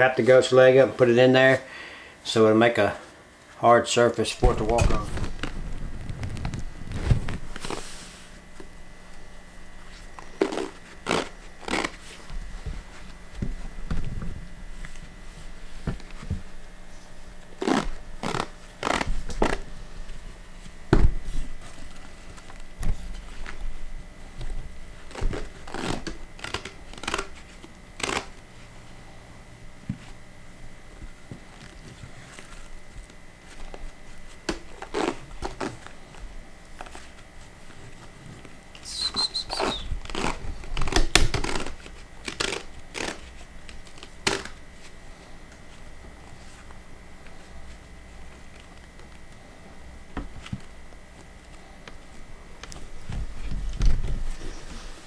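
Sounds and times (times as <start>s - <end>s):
loud thump: 4.4s - 7.3s
adhesive wrap tearing off roll: 4.4s - 8.0s, 10.2s - 12.2s, 17.6s - 19.7s, 25.1s - 28.4s, 34.5s - 36.0s, 38.8s - 44.6s
high wavering squeak: 38.8s - 39.9s
short rasping noises: 38.8s - 40.4s.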